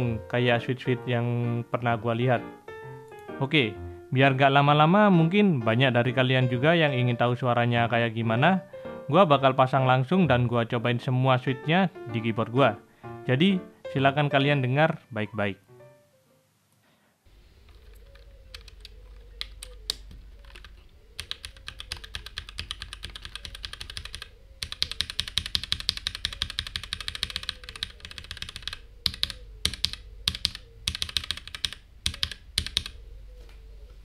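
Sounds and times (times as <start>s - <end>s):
mechanical keyboard typing: 17.6s - 33.0s.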